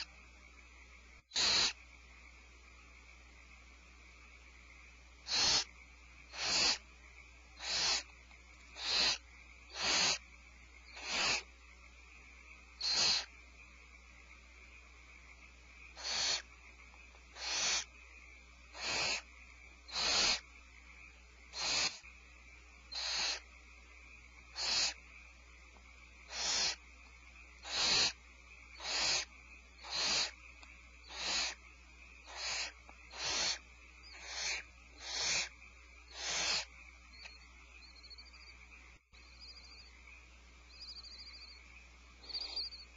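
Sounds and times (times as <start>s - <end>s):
owl hissing snore calls: 1.3s - 1.8s, 5.2s - 6.9s, 7.5s - 11.6s, 12.8s - 13.4s, 15.8s - 22.2s, 22.9s - 23.6s, 24.4s - 25.1s, 26.2s - 26.9s, 27.5s - 38.5s, 39.2s - 40.0s, 40.7s - 41.6s, 42.2s - 42.9s.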